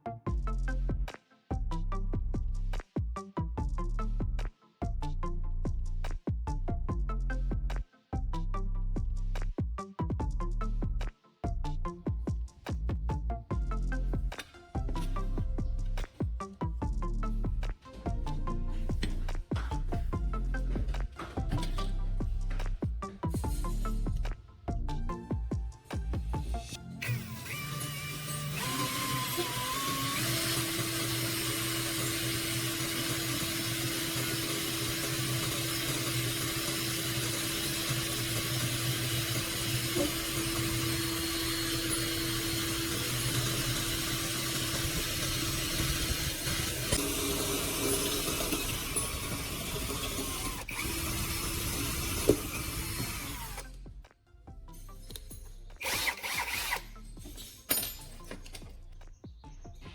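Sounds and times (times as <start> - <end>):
electric power tool running: 27.0 - 53.8, 55.8 - 57.0.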